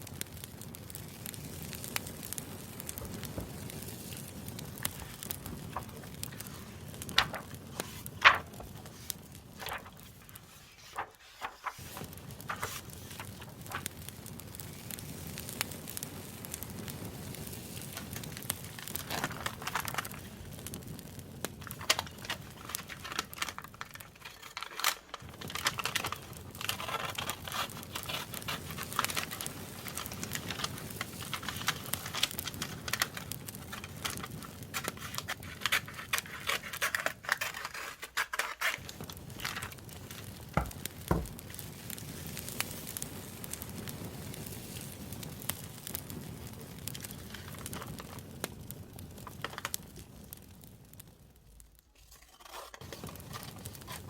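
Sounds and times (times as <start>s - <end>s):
campfire crackling: 0.0s - 54.0s
paper and plastic crinkling: 2.9s - 14.0s, 17.7s - 20.6s, 21.5s - 41.6s, 46.9s - 48.3s, 49.2s - 49.8s, 51.9s - 54.0s.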